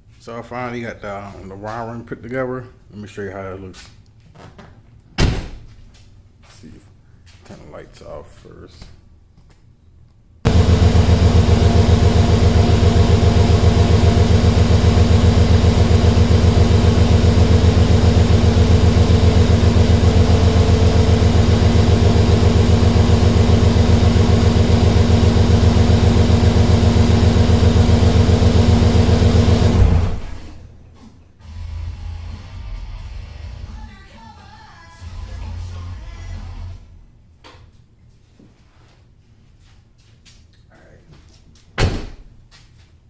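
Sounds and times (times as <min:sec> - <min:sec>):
car engine idling: 0:10.5 - 0:30.6.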